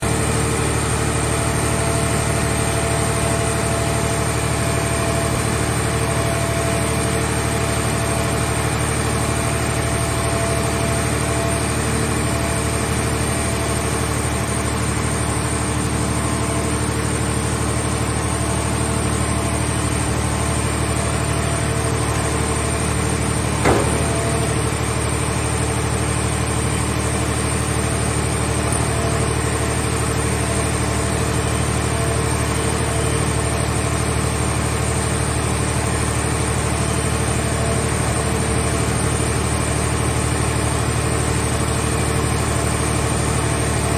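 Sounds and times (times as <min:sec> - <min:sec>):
hydraulic power unit running: 0:00.0 - 0:43.9
sharp knock: 0:23.6 - 0:24.7.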